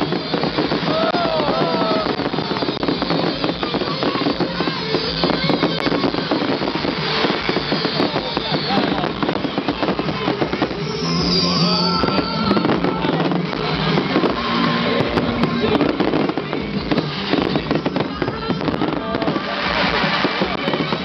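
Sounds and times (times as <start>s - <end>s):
fireworks bangs and crackles: 0.0s - 21.0s
loud music: 0.0s - 21.0s
rocket whistles: 10.2s - 14.9s.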